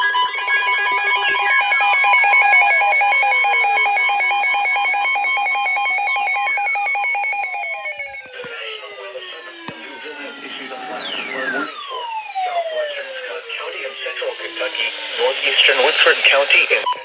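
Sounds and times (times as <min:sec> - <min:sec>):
electronic alarm beeping: 0:00.0 - 0:16.2, 0:16.8 - 0:17.0
rapid electronic pulsing: 0:07.5 - 0:16.7
falling whistle-like glides: 0:07.7 - 0:15.3.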